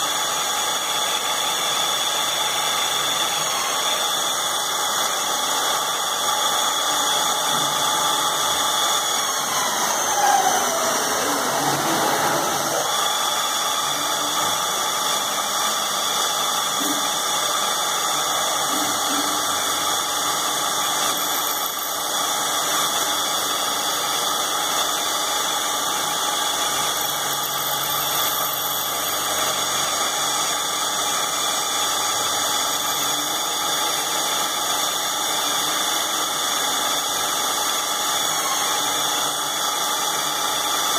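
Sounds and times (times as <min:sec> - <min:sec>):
drilling machine whine: 0:00.0 - 0:40.9
falling whine: 0:03.1 - 0:22.6.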